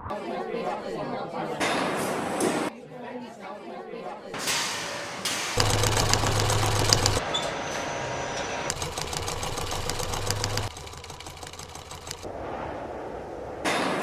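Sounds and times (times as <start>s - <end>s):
machinery humming: 5.6s - 7.2s, 7.9s - 12.4s
rapid mechanical clicking: 5.6s - 7.2s, 8.7s - 12.3s.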